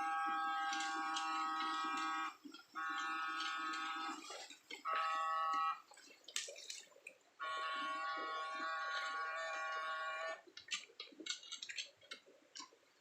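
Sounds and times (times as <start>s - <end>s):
inverter high-pitched whine: 0.0s - 4.3s
water splashes and clicks: 0.0s - 13.0s.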